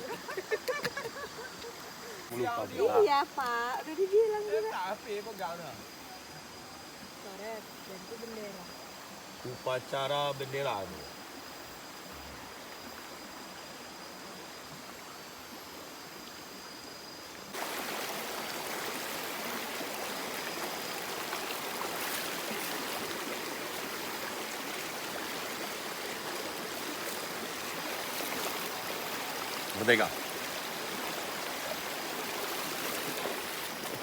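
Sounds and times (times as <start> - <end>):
stream water rushing: 0.0 - 3.2, 16.2 - 34.0.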